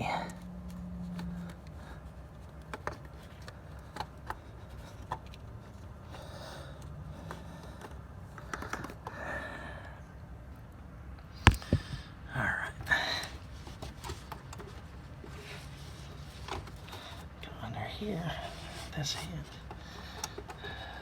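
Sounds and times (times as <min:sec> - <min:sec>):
hard plastic parts clicking: 0:11.5 - 0:12.0
sharp loud knocks: 0:11.5 - 0:12.0.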